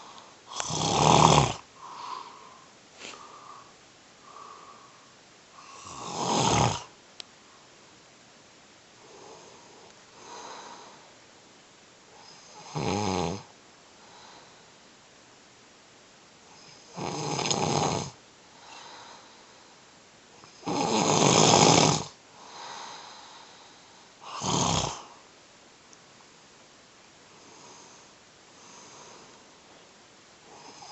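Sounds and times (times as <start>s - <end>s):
soft breaths: 0.0s - 8.0s, 8.9s - 11.3s, 13.4s - 15.0s, 18.4s - 25.4s, 27.0s - 30.9s
man snoring: 0.5s - 2.4s, 5.6s - 6.9s, 12.2s - 13.5s, 16.6s - 19.0s, 20.5s - 22.9s, 24.2s - 25.1s, 30.5s - 30.9s.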